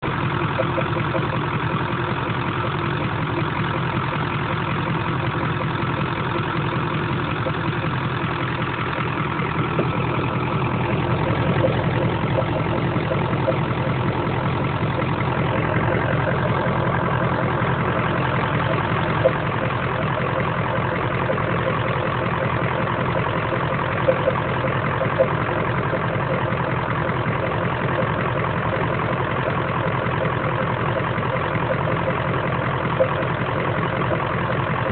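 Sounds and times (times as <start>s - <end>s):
engine idling: 0.0s - 34.9s.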